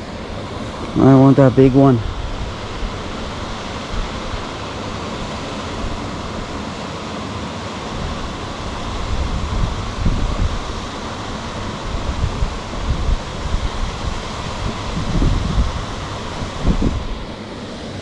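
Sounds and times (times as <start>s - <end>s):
wind blowing on microphone: 7.9s - 18.0s.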